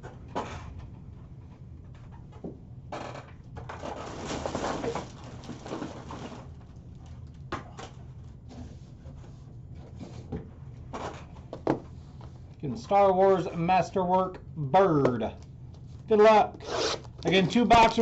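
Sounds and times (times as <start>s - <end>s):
packaging rustling and scraping: 3.9s - 7.4s, 16.6s - 18.0s.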